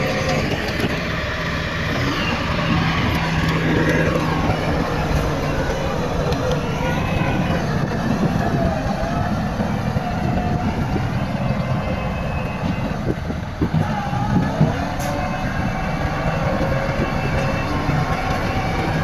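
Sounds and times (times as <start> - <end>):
diesel engine rumble: 0.0 - 19.0.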